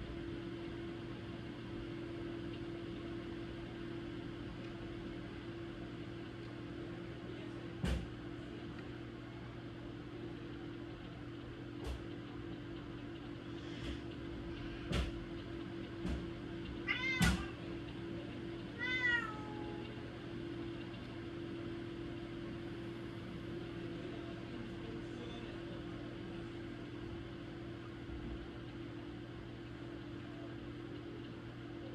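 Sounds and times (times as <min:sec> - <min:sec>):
steady low hum: 0:00.0 - 0:31.9
cat meowing: 0:16.8 - 0:17.6, 0:18.8 - 0:19.8.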